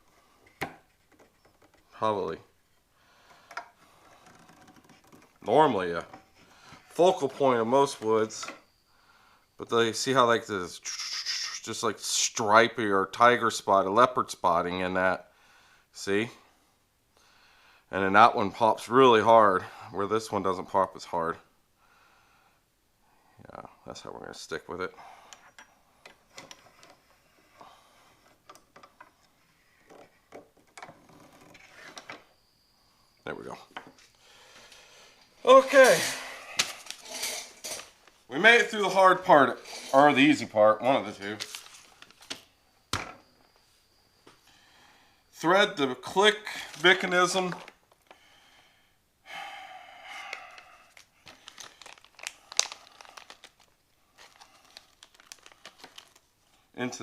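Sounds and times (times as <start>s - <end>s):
small parts clicking and rubbing: 3.5s - 5.5s.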